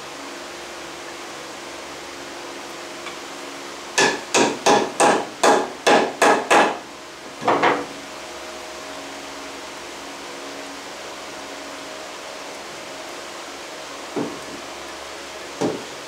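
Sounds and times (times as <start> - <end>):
hammer striking wood: 4.0 - 6.8, 14.2 - 14.4, 15.6 - 15.8.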